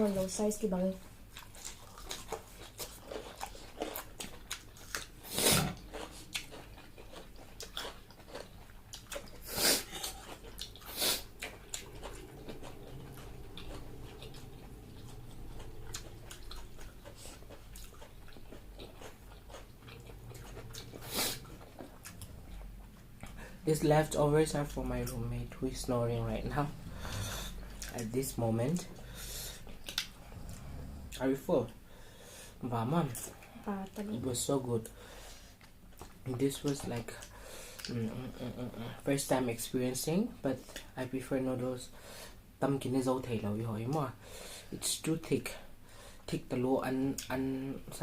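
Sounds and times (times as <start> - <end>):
person chewing and biting: 1.3 - 23.5, 27.4 - 28.2, 28.8 - 30.7.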